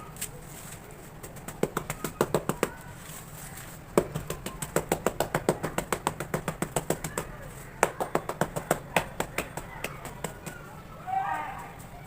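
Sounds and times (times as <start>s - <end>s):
tapping on hard cement: 1.2s - 2.8s, 3.9s - 10.7s.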